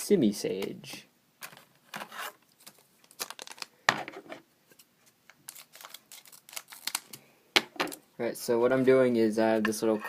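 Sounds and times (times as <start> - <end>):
foil wrapper crinkling: 2.5 - 3.8, 5.3 - 7.2.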